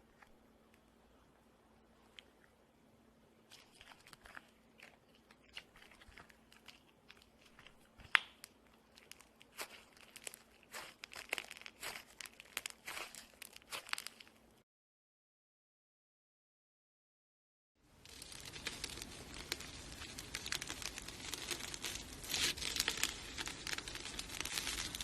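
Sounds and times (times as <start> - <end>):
slime crackling and popping: 3.5 - 14.5, 18.0 - 25.0.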